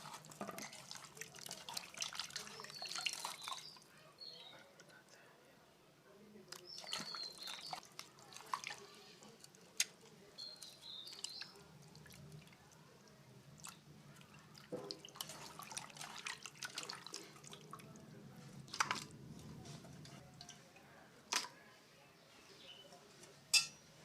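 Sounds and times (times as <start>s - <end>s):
meat washed in water: 0.0s - 4.3s, 6.4s - 21.6s.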